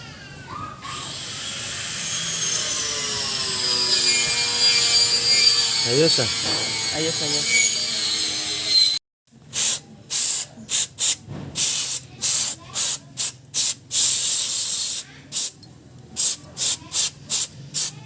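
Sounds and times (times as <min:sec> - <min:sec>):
hissing spray bursts: 0:09.5 - 0:15.6, 0:16.2 - 0:18.0.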